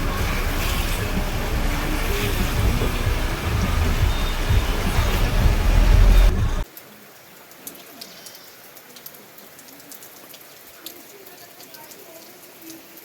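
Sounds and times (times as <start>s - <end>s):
loud low rumbling: 0.0s - 6.6s
light rain dripping: 0.0s - 13.0s.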